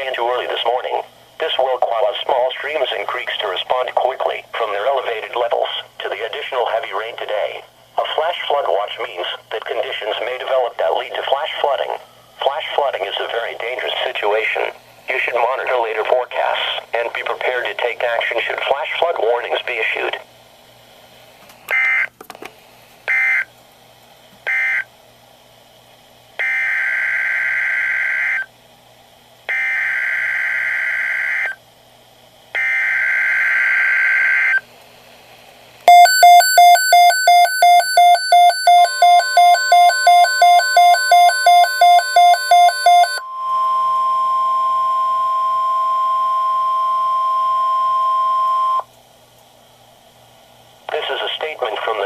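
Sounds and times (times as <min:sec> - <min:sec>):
steady alert tone: 0:35.9 - 0:43.6.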